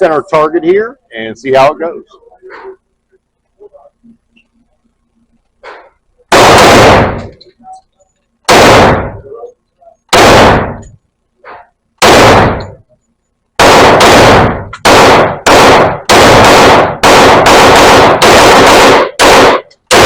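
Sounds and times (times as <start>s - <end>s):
pistol shots indoors: 6.3s - 7.4s, 8.5s - 9.4s, 10.1s - 11.0s, 12.0s - 12.9s, 13.6s - 20.0s.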